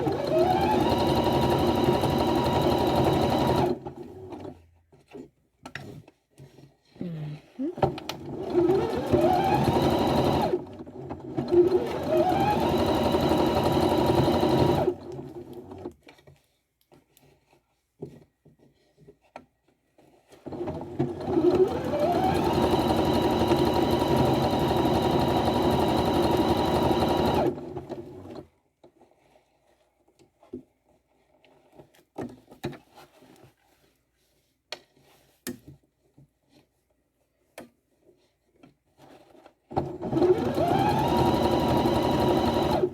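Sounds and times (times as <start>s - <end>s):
sewing machine stitching: 0.0s - 4.6s, 7.8s - 15.9s, 20.4s - 28.5s, 39.7s - 42.9s.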